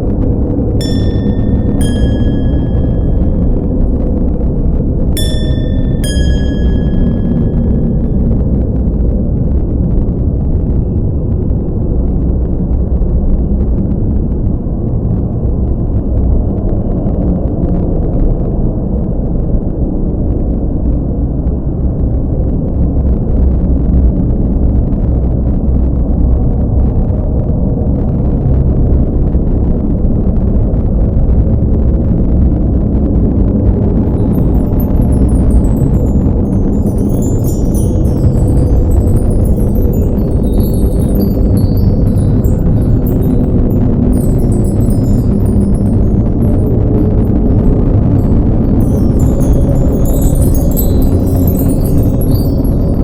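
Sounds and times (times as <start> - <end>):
deep rumble: 24.7 - 53.0.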